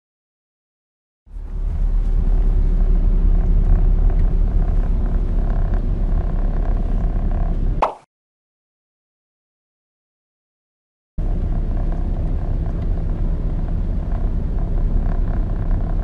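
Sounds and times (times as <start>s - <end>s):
car cabin road rumble: 1.3s - 7.8s, 11.2s - 16.0s.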